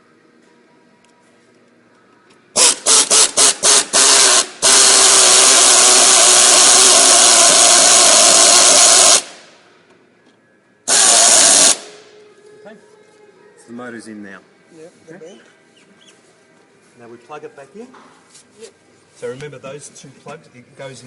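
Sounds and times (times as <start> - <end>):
power drill driving screws: 2.6 - 9.3.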